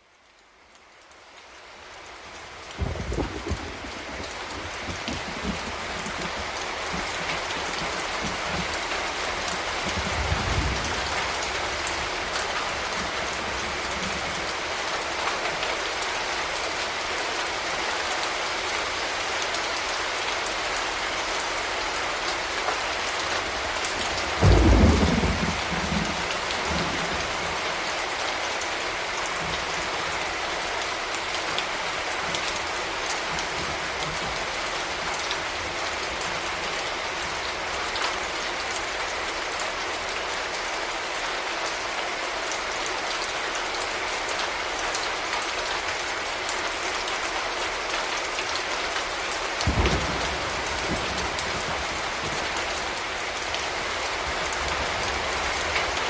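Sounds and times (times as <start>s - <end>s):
steady rain: 0.0s - 56.0s
low roll of thunder: 2.8s - 8.8s, 9.9s - 12.1s, 24.3s - 27.6s, 49.6s - 52.5s.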